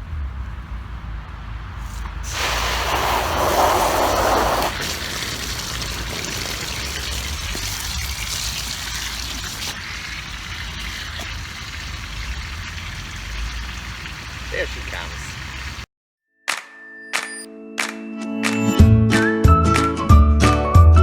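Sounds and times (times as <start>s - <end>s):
water splashing into a pool: 2.0s - 15.9s.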